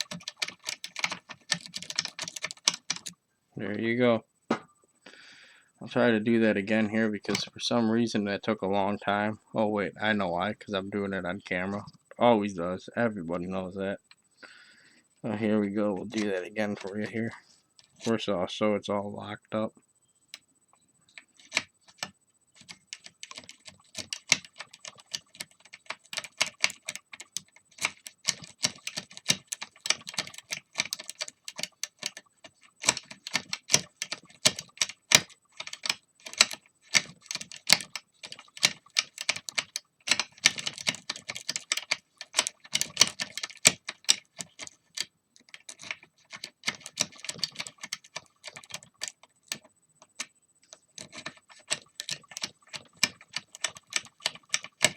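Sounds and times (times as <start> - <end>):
lock pick clicking and scraping: 0.0 - 3.1, 21.1 - 54.9.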